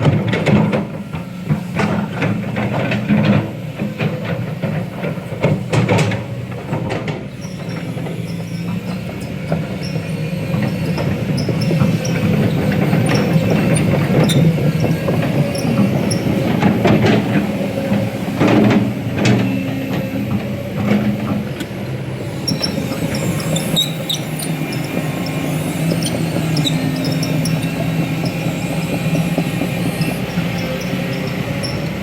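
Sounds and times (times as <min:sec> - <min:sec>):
diesel engine running: 0:00.0 - 0:32.0
high metallic squeaks: 0:22.2 - 0:32.0.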